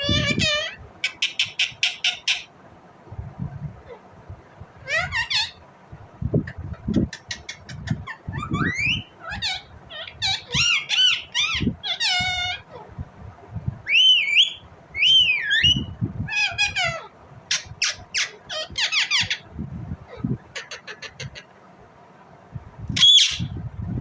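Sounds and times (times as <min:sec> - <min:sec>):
parakeet chirping and squawking: 0:00.0 - 0:02.5, 0:04.7 - 0:05.7, 0:06.4 - 0:13.0, 0:13.8 - 0:19.5, 0:20.1 - 0:21.6, 0:23.0 - 0:23.6.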